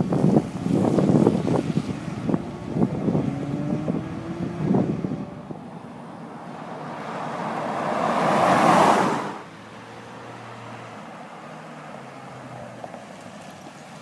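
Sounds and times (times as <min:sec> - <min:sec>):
wind on microphone: 0:00.0 - 0:05.9
rush of vehicle noise: 0:00.0 - 0:14.0.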